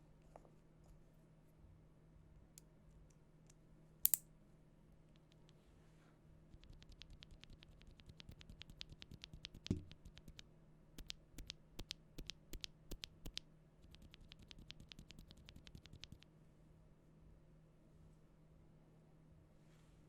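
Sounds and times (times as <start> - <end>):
mechanical keyboard typing: 6.5 - 10.4, 11.0 - 16.2.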